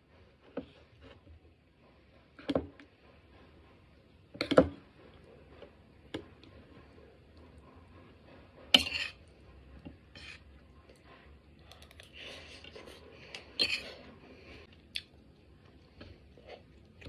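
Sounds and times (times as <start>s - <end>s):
utensils and dishes clinking: 13.4s - 14.0s.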